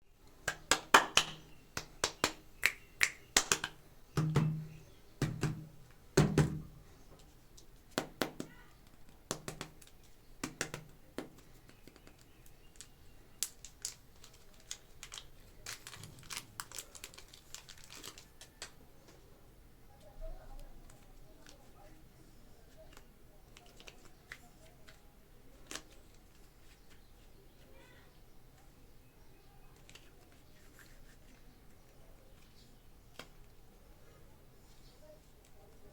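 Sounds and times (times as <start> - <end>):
plastic packaging clicks and taps: 3.4 - 16.0
dull hollow knocks: 4.2 - 6.8.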